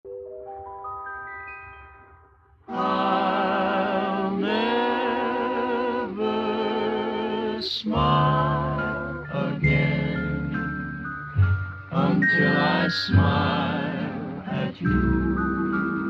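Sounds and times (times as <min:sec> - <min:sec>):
bell-like notes: 0:00.5 - 0:03.4, 0:07.9 - 0:16.0
song accompaniment: 0:00.6 - 0:16.0
person singing with vibrato: 0:02.7 - 0:11.2, 0:11.8 - 0:16.0.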